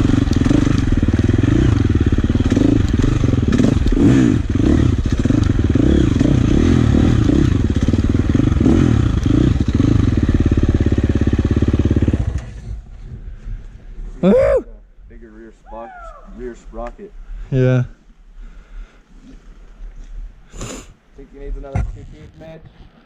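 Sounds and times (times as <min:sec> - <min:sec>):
dirt bike engine revving: 0:00.0 - 0:12.9.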